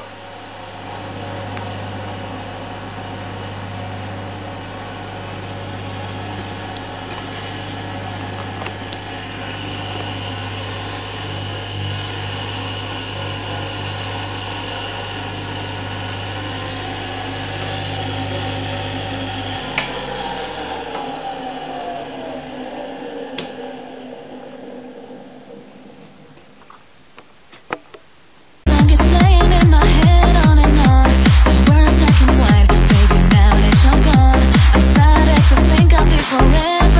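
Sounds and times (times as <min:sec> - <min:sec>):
motor spinning down: 0:00.0 - 0:27.0, 0:28.7 - 0:36.9
electric motor humming: 0:00.0 - 0:27.2, 0:28.7 - 0:36.9.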